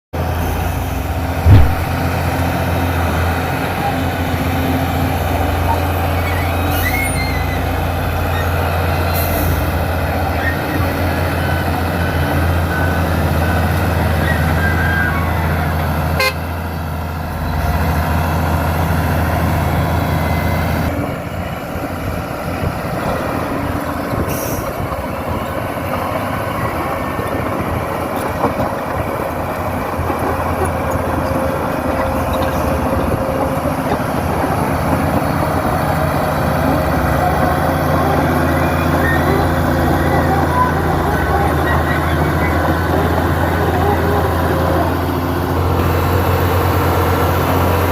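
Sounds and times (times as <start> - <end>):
diesel engine running: 0.2 - 47.9
loud thump: 1.4 - 2.0.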